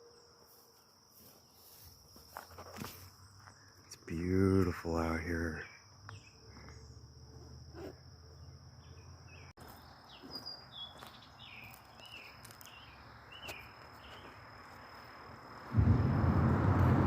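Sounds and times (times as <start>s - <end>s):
bird chirping: 5.5s - 7.1s, 8.3s - 14.4s.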